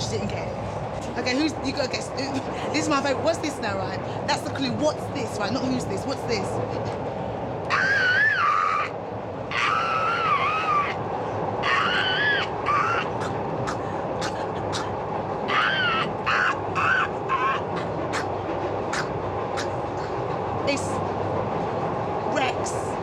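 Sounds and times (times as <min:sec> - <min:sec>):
subway train rumble: 0:00.0 - 0:23.0
person screeching like a dinosaur: 0:07.7 - 0:08.9, 0:09.5 - 0:11.0, 0:11.6 - 0:13.8, 0:15.5 - 0:17.7.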